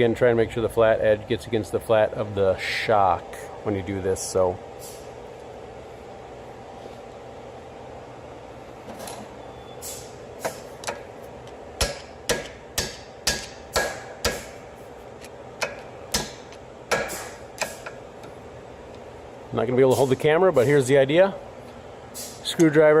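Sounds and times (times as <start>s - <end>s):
mallet knocking bolt: 11.8s - 14.6s.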